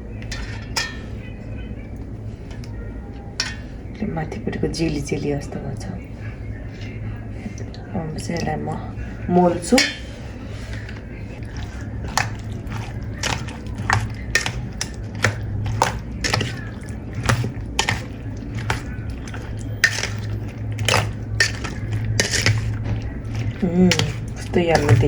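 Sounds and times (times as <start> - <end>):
low hum: 0.0 - 25.0
wet mixing sounds: 0.0 - 25.0
spoon clinking and scraping bowl: 0.2 - 1.3, 9.7 - 25.0.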